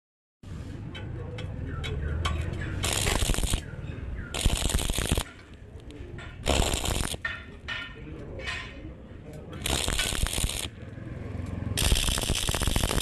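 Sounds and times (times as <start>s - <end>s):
welding arc crackling: 2.8s - 3.7s, 4.3s - 5.4s, 6.4s - 7.4s, 9.6s - 10.7s, 11.8s - 13.0s.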